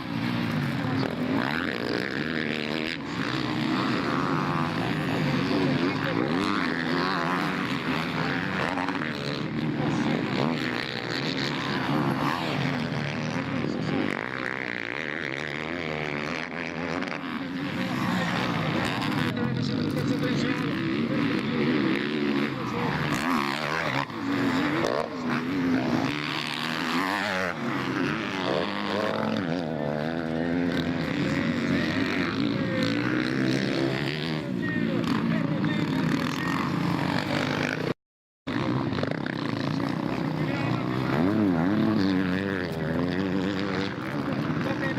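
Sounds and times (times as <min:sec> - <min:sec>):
motocross bike engines revving: 0:00.0 - 0:44.9.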